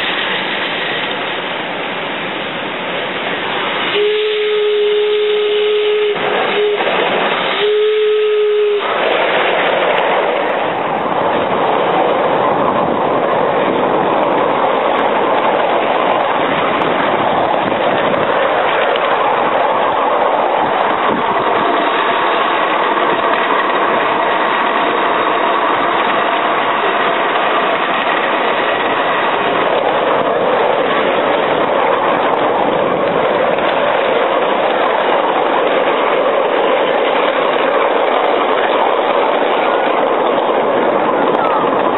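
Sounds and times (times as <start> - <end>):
miniature train rumbling on track: 0.0 - 41.9.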